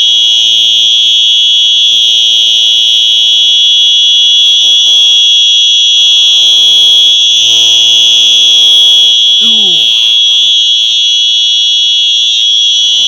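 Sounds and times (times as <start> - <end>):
fire alarm high-pitched tone: 0.0 - 13.0.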